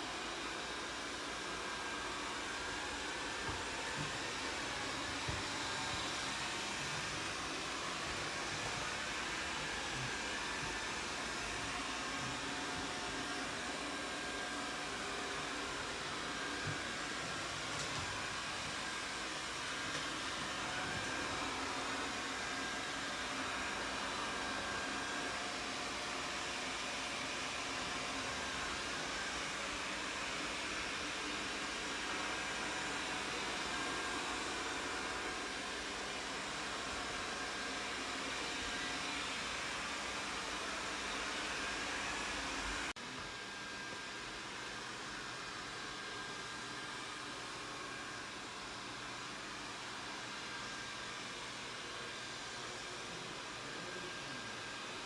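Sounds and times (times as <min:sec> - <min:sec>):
vacuum fan whirring: 0:00.0 - 0:55.0.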